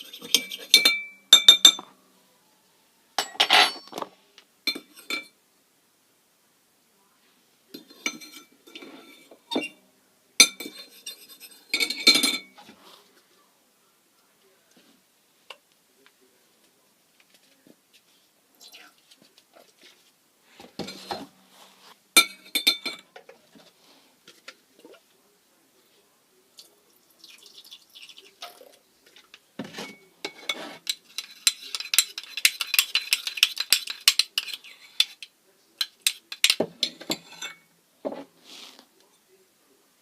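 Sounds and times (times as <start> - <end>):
utensil stirring in a container: 0.0 - 1.0, 10.6 - 12.1, 30.3 - 37.6.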